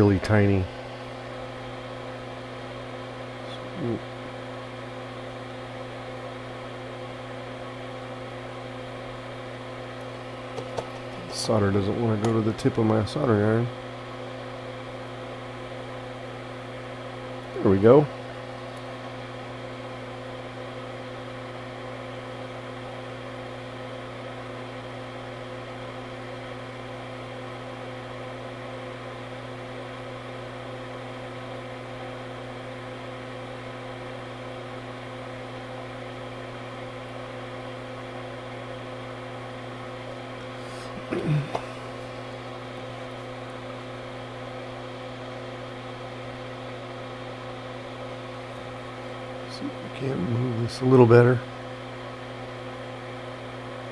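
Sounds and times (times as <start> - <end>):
electrical hum: 0.0 - 53.9
short falling vocal sound: 41.0 - 42.0.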